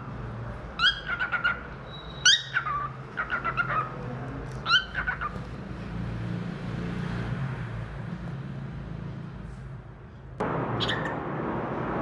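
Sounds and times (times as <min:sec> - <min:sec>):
cockatiel whistling and chirping: 0:00.8 - 0:03.8.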